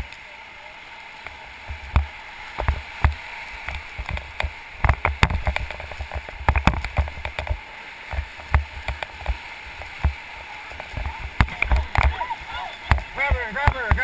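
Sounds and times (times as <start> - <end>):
whitewater rushing: 0.0 - 14.0
knocks and splashes: 1.6 - 14.0
thumps on microphone: 12.9 - 14.0.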